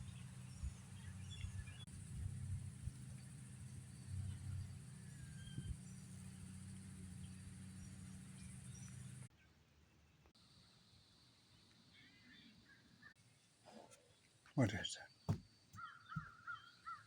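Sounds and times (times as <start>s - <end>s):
steady low hum: 0.0s - 9.3s
faint bird chirps: 3.1s - 10.3s, 10.9s - 17.0s.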